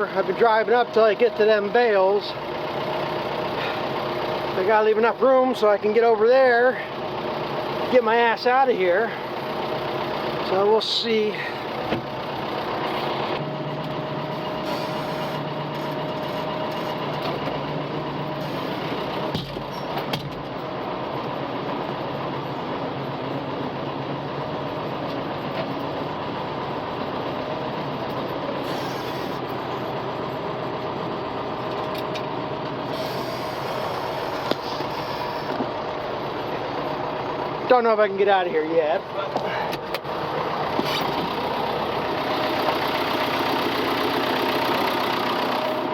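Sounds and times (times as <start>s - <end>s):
loader engine running: 0.0s - 45.9s.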